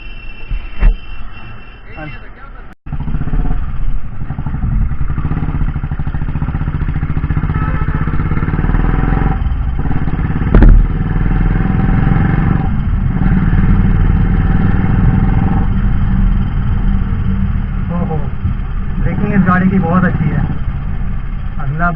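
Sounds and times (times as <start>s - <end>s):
motorcycle engine running: 2.9s - 21.9s
sharp knock: 10.5s - 11.0s.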